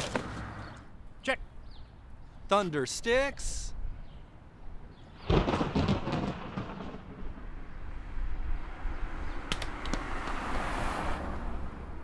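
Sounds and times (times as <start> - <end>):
thunder sticks banging: 5.2 - 7.5
sharp clicks: 9.5 - 10.4.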